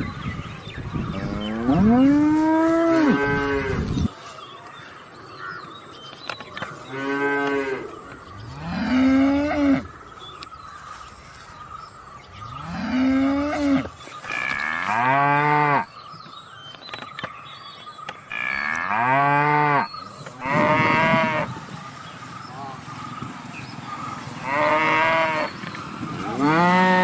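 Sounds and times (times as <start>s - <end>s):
cattle mooing: 1.2s - 3.9s, 18.3s - 21.5s, 24.4s - 25.6s, 26.2s - 27.0s.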